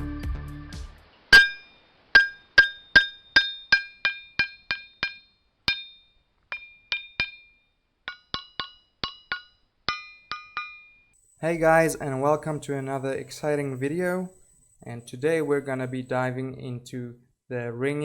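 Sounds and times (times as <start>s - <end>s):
rocks struck ringing like bells: 1.3s - 14.6s.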